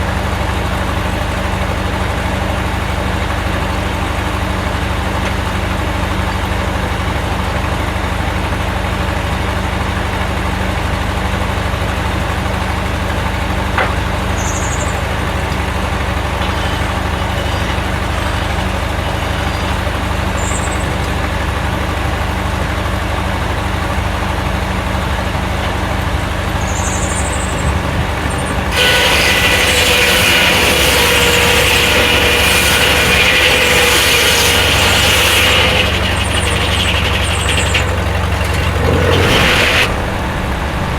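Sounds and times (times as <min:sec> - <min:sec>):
heavy engine idling: 0:00.0 - 0:40.9
high whine: 0:38.7 - 0:40.9.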